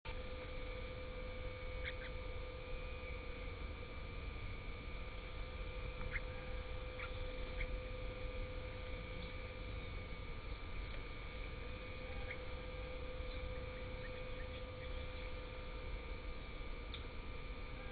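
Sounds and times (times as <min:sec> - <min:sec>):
steady low hum: 0:00.0 - 0:17.9
constant tone: 0:00.1 - 0:17.9
high bird chirps: 0:01.8 - 0:02.1, 0:06.0 - 0:07.8.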